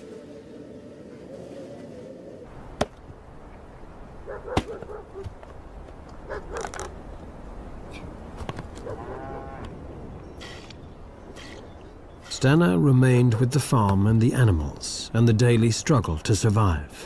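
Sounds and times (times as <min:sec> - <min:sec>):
cattle lowing: 0:03.6 - 0:12.4.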